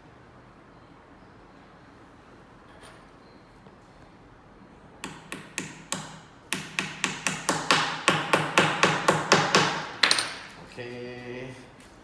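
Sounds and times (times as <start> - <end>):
hammer tapping small nail: 5.0 - 10.5.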